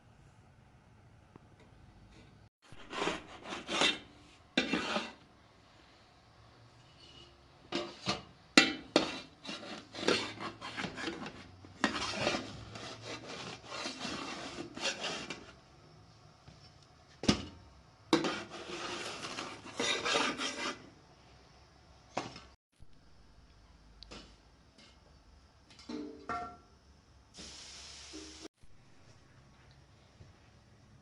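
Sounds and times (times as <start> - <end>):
rubbing and scraping strokes: 2.6 - 5.2, 9.0 - 15.6, 18.2 - 20.9.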